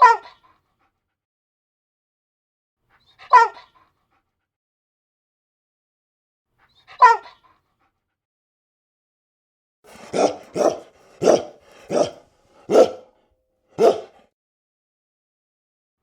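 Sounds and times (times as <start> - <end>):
dog yelp: 9.9 - 13.1, 13.8 - 14.2
dog barking: 9.9 - 13.2, 13.8 - 14.2.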